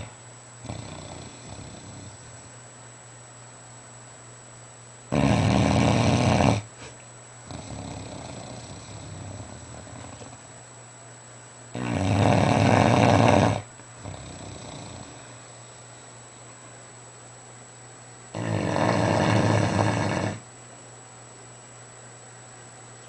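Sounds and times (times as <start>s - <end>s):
dog snoring: 0.0s - 2.5s, 5.1s - 10.6s, 11.7s - 15.9s, 18.3s - 20.5s.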